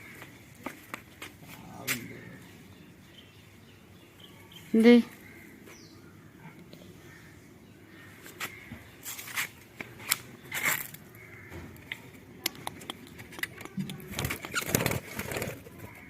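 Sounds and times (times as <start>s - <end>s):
scraping rustles: 8.3s - 11.0s, 14.0s - 16.0s
sharp clicks: 11.8s - 15.1s.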